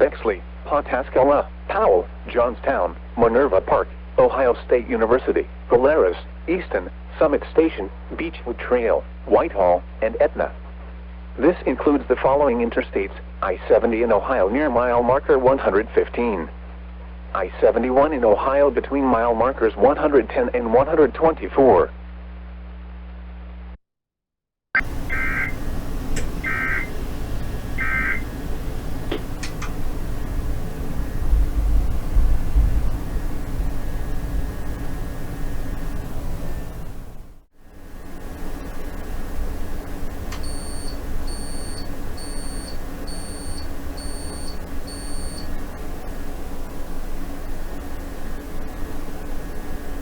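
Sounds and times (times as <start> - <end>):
buzzy digital data bursts: 24.8 - 25.7, 26.4 - 29.0
electrical hum: 24.8 - 50.0
short high-pitched electronic beeps: 26.4 - 26.9, 27.8 - 28.3, 40.4 - 45.8.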